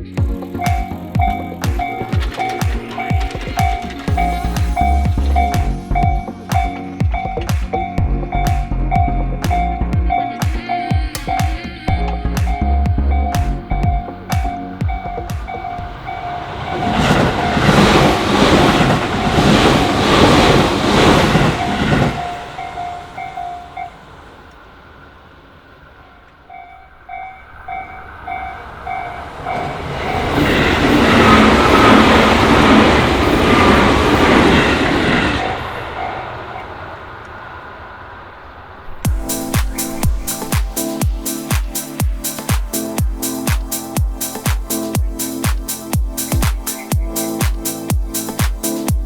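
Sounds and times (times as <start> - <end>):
level crossing bell ringing: 0.5 - 8.5
train wheel clatter: 0.6 - 8.7, 14.4 - 24.0, 28.2 - 37.4.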